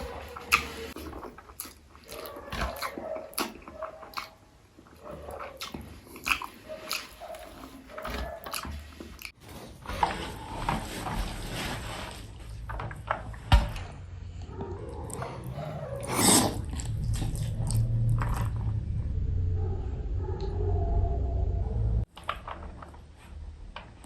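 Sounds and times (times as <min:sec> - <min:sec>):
chewing and mouth sounds: 0:00.0 - 0:10.2, 0:14.4 - 0:19.0.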